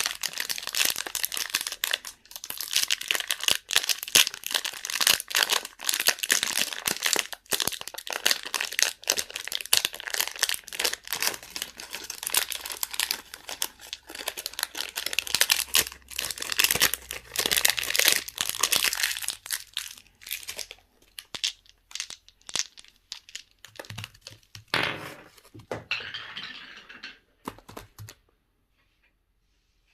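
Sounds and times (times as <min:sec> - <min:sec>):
candy wrappers crinkling: 0:00.0 - 0:24.7.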